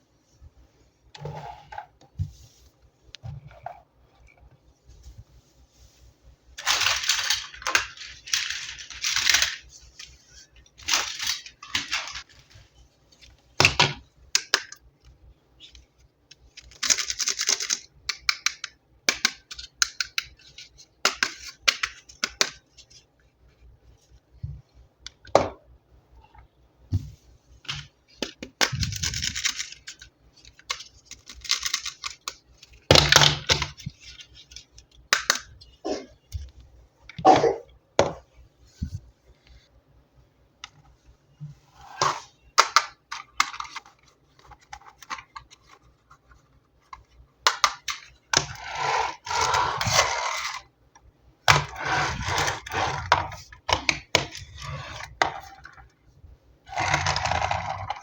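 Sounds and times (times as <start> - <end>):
plastic toy parts clicking: 6.6 - 9.6, 16.6 - 20.4, 28.5 - 33.8.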